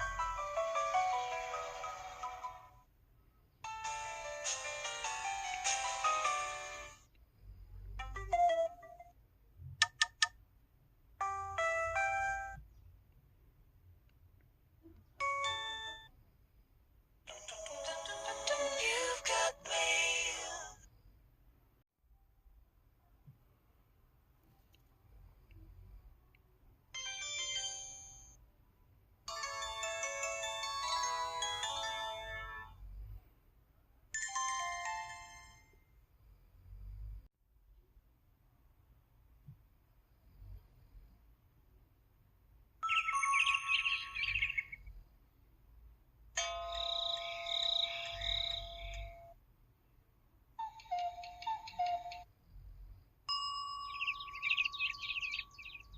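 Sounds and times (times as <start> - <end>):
phone electronic melody: 0.0 - 2.8, 11.2 - 12.6, 42.8 - 44.6.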